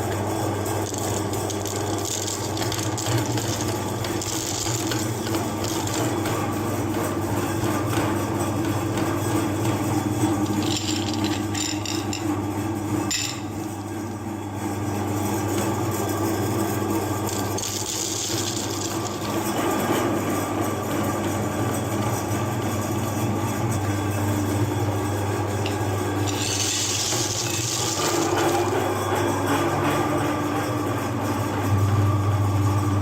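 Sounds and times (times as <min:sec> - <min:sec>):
meat grinder motor hum: 0:00.0 - 0:33.0
rasping grinding noise: 0:10.0 - 0:12.4, 0:17.2 - 0:20.6, 0:25.6 - 0:29.8.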